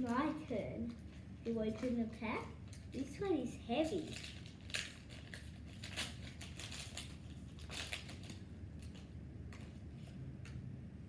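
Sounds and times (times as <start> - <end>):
foil wrapper crinkling: 3.8 - 9.8.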